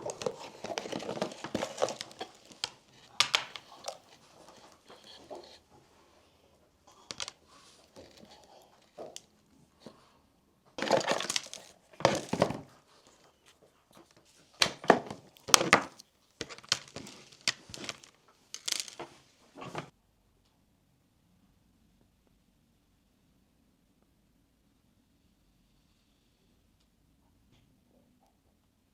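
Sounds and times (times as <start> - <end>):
packaging crinkling and rustling: 0.0 - 5.6, 7.0 - 9.3, 10.8 - 13.4, 14.0 - 19.1.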